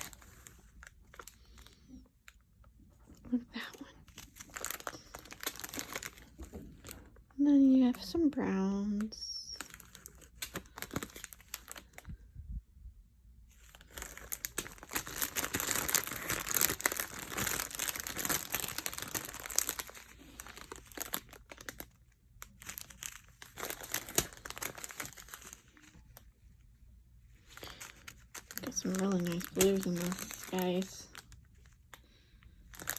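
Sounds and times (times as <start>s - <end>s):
plastic bags crinkling: 0.0s - 2.1s, 3.0s - 12.2s, 13.5s - 26.6s, 27.3s - 32.9s
small beads rattling in bags: 4.2s - 7.0s, 13.6s - 25.9s, 27.5s - 31.4s, 32.6s - 32.9s.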